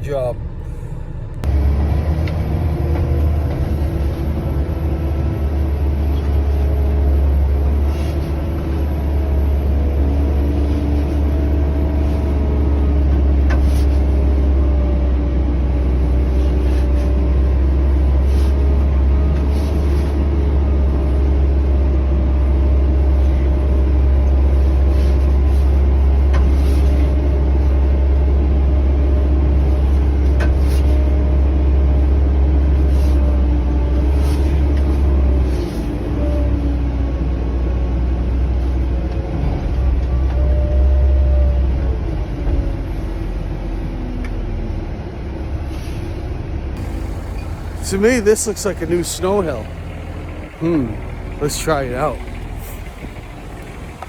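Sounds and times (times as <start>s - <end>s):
snow plow engine droning: 0.0s - 45.6s, 46.6s - 54.0s.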